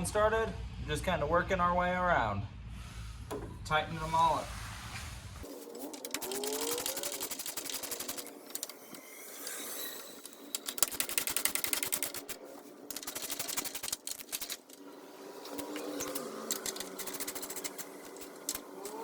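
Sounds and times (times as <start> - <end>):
ratchet wrench clicking: 6.0 - 8.8, 10.2 - 14.8, 15.4 - 19.0.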